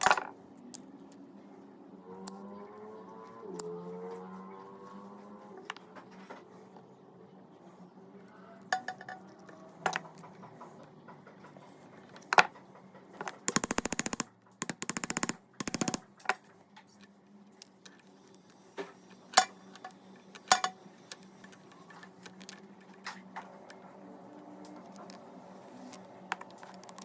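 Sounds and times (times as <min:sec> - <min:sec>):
small parts clicking and tapping: 0:00.0 - 0:01.3, 0:08.6 - 0:23.8, 0:24.6 - 0:27.0
rapid ratchet-like clicking: 0:13.4 - 0:16.1.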